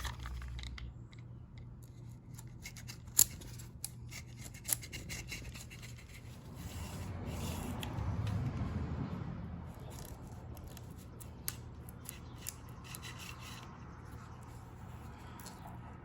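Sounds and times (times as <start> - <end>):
spline roller rubbing and rasping: 4.2 - 8.5.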